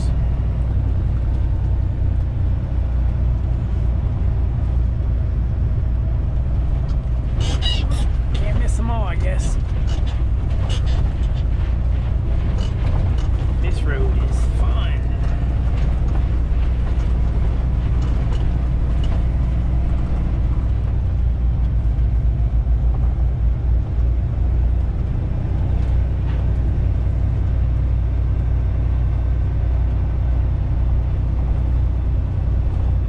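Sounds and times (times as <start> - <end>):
diesel truck engine running: 0.0 - 33.0
knocks and rattles: 6.9 - 21.0.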